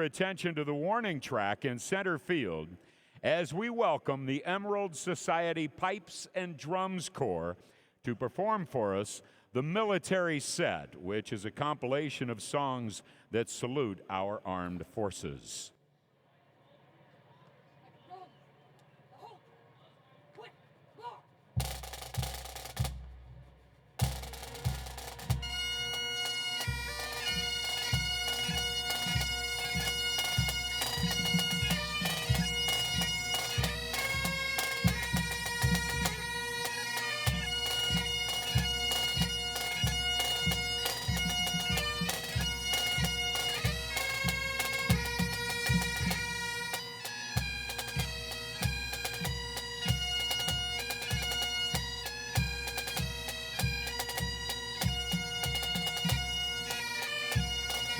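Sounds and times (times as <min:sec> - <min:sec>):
bagpipes playing: 0:21.6 - 0:23.1, 0:24.0 - 0:57.9
bass drum beats: 0:21.6 - 0:26.1
drum strikes: 0:21.6 - 0:57.9.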